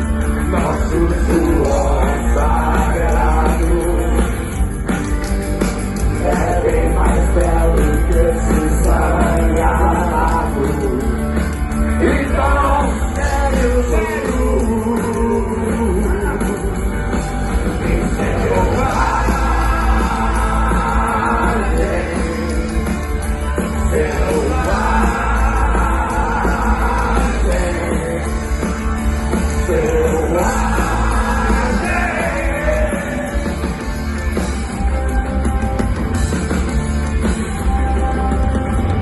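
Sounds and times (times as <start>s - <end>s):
long held vocal or guitar line: 0.0s - 4.4s, 6.1s - 11.2s, 12.0s - 22.9s, 23.6s - 34.0s
live rock band playing: 0.0s - 39.0s
person singing: 0.4s - 4.4s, 6.1s - 11.3s, 12.0s - 17.0s, 23.7s - 28.7s, 29.3s - 33.9s.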